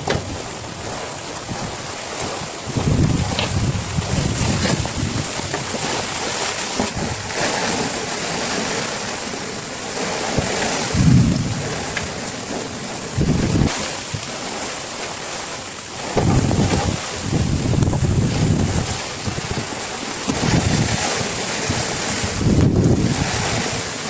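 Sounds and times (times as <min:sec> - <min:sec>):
heavy rain hissing: 0:00.0 - 0:24.0
wind gusts buffeting microphone: 0:00.0 - 0:24.0.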